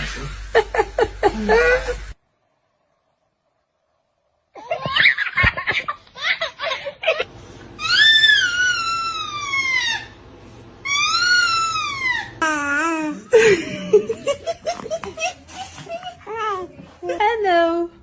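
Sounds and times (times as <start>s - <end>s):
baby squealing: 7.8s - 10.2s, 10.8s - 13.3s
baby giggling: 12.0s - 16.9s.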